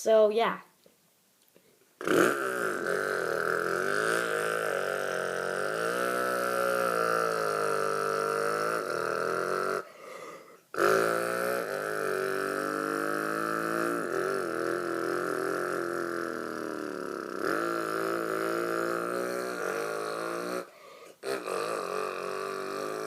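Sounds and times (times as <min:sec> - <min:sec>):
person imitating engine: 0:02.0 - 0:23.0.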